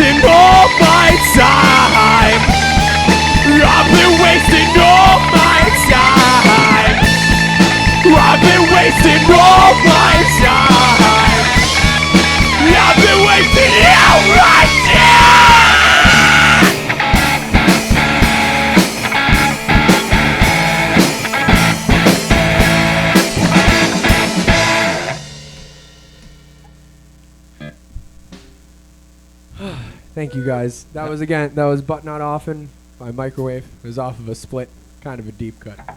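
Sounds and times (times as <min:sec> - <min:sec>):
live pop punk band: 0:00.0 - 0:26.4
heavy drum hits: 0:00.3 - 0:26.6
faint hum: 0:21.6 - 0:35.9.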